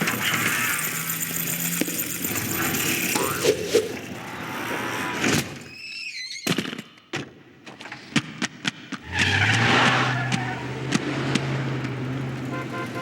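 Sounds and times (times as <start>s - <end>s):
high wavering squeal: 0.0s - 6.3s.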